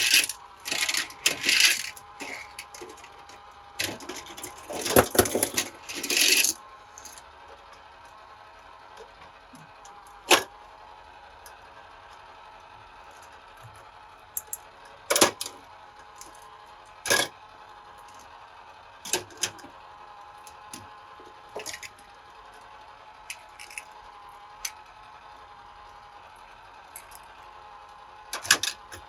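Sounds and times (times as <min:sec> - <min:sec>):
toy cars clacking: 0:00.0 - 0:07.2, 0:14.4 - 0:15.6, 0:17.1 - 0:17.3, 0:21.6 - 0:22.0, 0:23.3 - 0:24.0, 0:27.0 - 0:27.2, 0:28.4 - 0:29.0.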